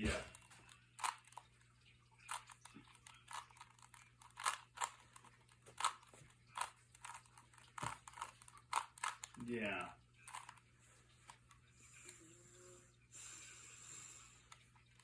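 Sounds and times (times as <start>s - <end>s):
puzzle cube plastic clicks: 0.0s - 1.6s, 2.2s - 9.4s, 10.2s - 10.6s.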